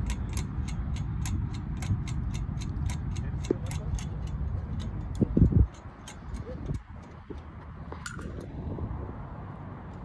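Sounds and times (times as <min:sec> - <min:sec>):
ratchet wrench clicking: 0:00.0 - 0:07.2
steady low rumble: 0:00.0 - 0:10.0.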